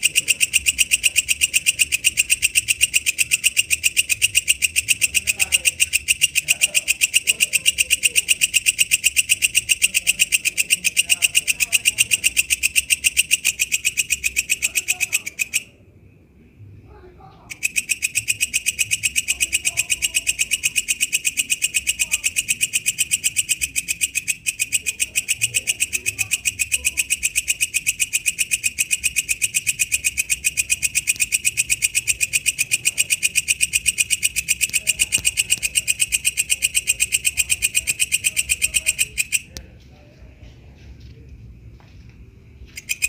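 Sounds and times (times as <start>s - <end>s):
katydid buzzy pulsed trill: 17.5s - 39.6s.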